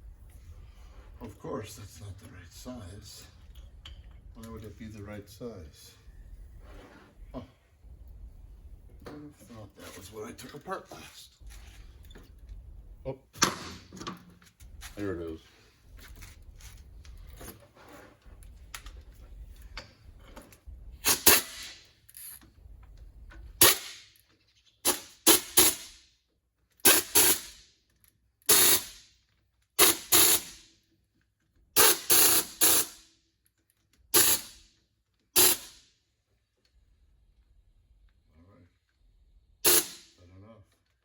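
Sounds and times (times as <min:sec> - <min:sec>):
pneumatic air tool bursts: 0:21.0 - 0:21.9, 0:23.6 - 0:24.2, 0:24.8 - 0:26.0, 0:26.8 - 0:27.7, 0:28.4 - 0:29.2, 0:29.8 - 0:30.7, 0:31.8 - 0:33.1, 0:34.1 - 0:34.7, 0:35.4 - 0:35.9, 0:39.6 - 0:40.2.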